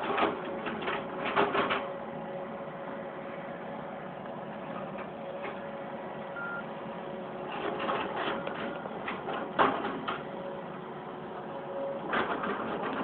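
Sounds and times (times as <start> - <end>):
diesel machinery running: 0.0 - 13.0
short beep: 6.4 - 6.7.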